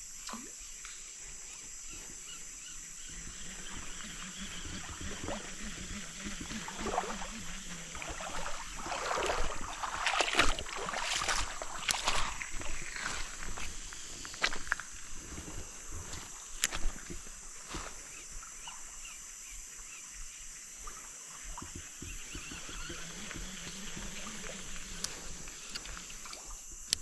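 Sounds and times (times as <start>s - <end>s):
steady high drone: 2.4s - 15.7s.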